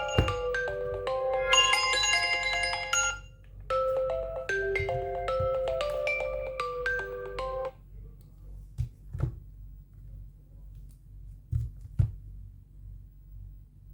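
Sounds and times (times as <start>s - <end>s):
phone alarm melody: 0.0s - 7.7s.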